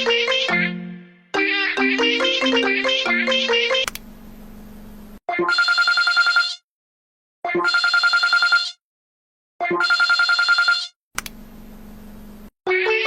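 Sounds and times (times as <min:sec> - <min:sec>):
telephone ringtone trilling: 0:05.4 - 0:06.6, 0:07.5 - 0:08.8, 0:09.7 - 0:11.0.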